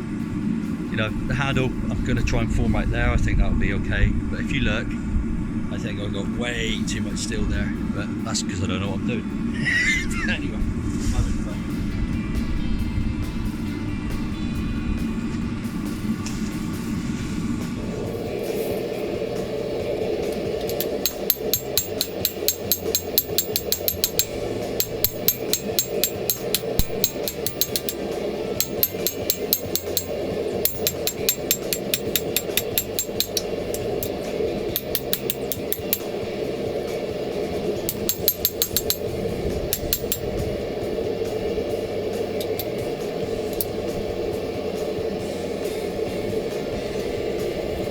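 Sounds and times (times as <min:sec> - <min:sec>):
low rushing background: 0:00.0 - 0:47.9
hammer ringing on anvil: 0:20.6 - 0:36.1, 0:37.8 - 0:39.1, 0:39.7 - 0:40.3.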